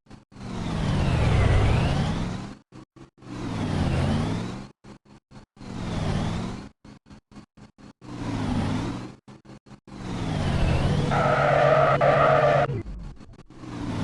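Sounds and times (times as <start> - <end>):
vehicles passing by: 0.1 - 14.0
tyre squeal screech: 11.0 - 12.8.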